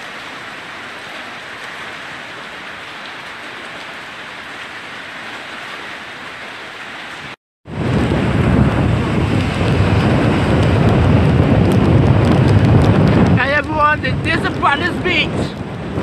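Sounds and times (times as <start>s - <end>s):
heavy rain: 0.0s - 16.0s
wind buffeting microphone: 7.7s - 16.0s.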